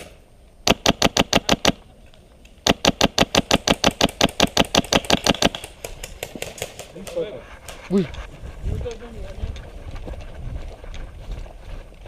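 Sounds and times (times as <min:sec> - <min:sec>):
airsoft gun firing bursts: 0:00.6 - 0:01.8, 0:02.6 - 0:06.8.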